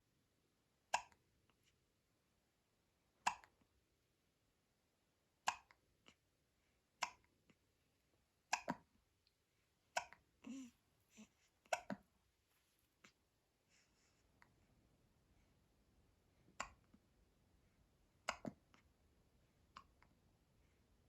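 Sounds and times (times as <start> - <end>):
baby hiccuping: 8.5 - 8.8, 9.9 - 12.0
low voiced baby sound: 9.9 - 12.0.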